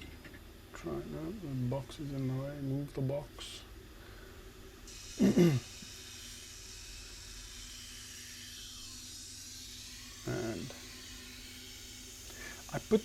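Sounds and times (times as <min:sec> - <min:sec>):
faint steady hiss: 0:00.0 - 0:07.2, 0:12.0 - 0:13.0
person grunting: 0:05.2 - 0:05.6.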